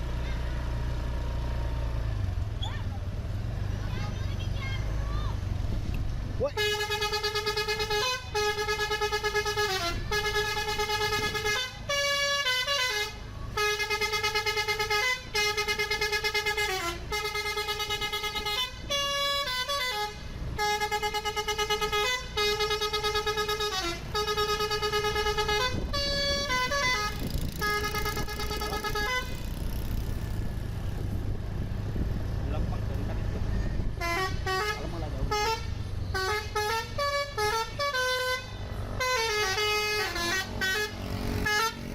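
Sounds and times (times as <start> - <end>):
low vehicle rumble: 0.0 - 41.9
musical bus horn playing a tune: 6.6 - 29.6, 33.9 - 41.9.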